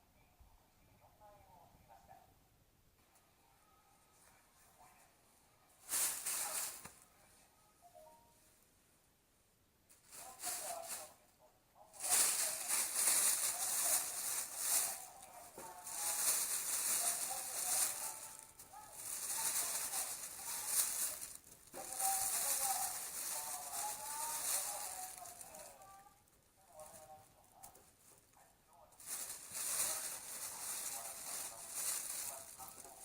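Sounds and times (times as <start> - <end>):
burning paper crackling: 5.8 - 7.0, 9.9 - 11.2, 12.0 - 26.1, 29.0 - 33.0.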